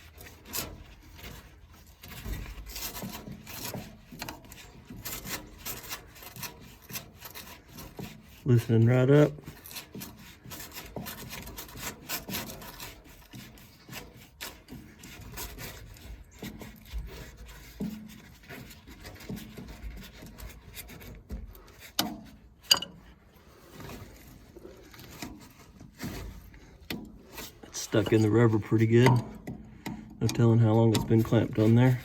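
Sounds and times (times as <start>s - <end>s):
hose clamp rubbing and scraping: 0.0s - 32.0s
small knocks: 23.8s - 32.0s.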